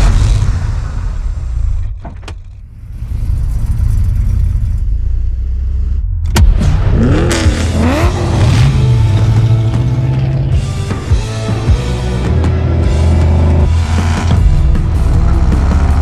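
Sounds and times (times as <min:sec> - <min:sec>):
engine revving: 0:02.6 - 0:16.0
sharp hit: 0:02.7 - 0:11.7.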